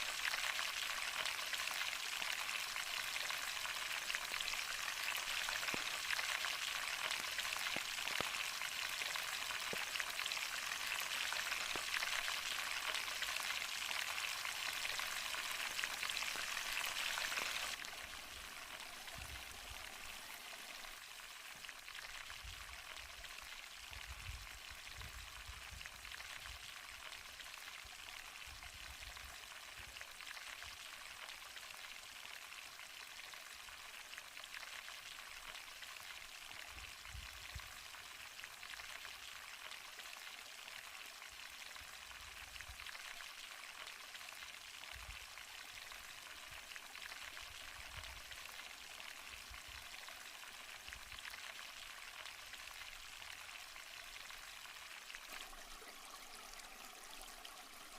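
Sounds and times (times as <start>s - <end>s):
chicken sizzling in hot oil: 0.0s - 27.9s.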